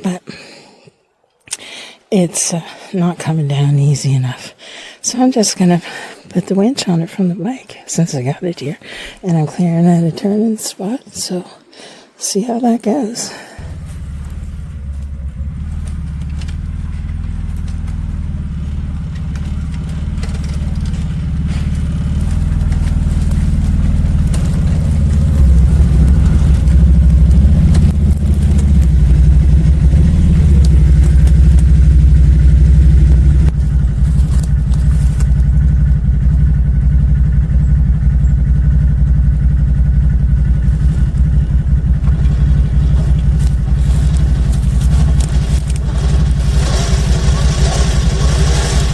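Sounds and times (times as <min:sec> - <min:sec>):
atv engine running: 0:13.6 - 0:48.9.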